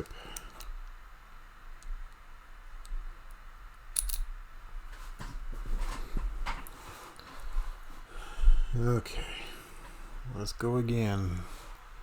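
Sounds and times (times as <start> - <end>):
low rumble of lock handling: 2.8 - 4.4
lock picks clicking and scraping: 3.9 - 4.3.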